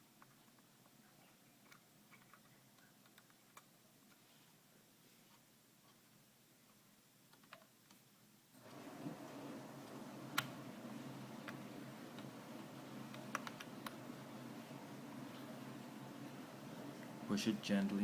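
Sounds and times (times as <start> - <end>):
steady background hiss: 0.0 - 18.0
memory module clicking: 9.8 - 10.7, 11.3 - 14.3.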